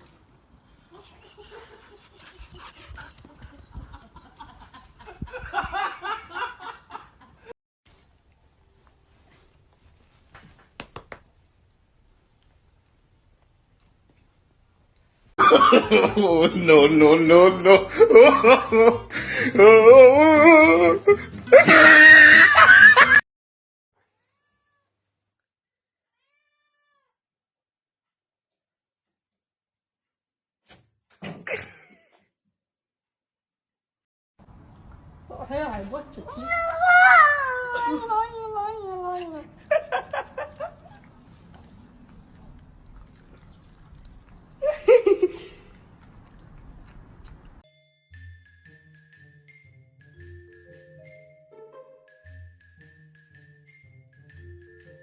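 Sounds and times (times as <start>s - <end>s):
cat meowing: 24.0s - 25.2s, 26.0s - 27.2s
cat yowling: 26.1s - 27.2s, 36.4s - 38.1s.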